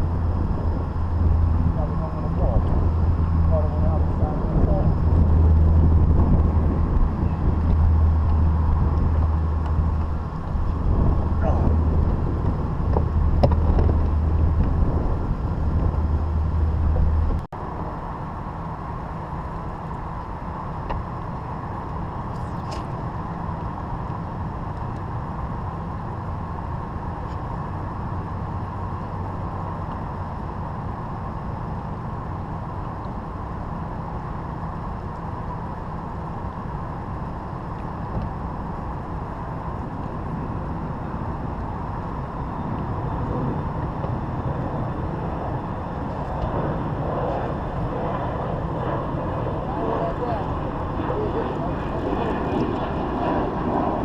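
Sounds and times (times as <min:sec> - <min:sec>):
boat motor running: 0:00.0 - 0:17.4
deep hum: 0:00.0 - 0:18.0.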